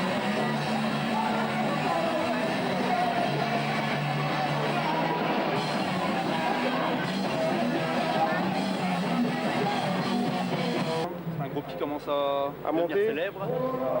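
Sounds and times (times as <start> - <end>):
punk rock band playing: 0.0 - 11.1.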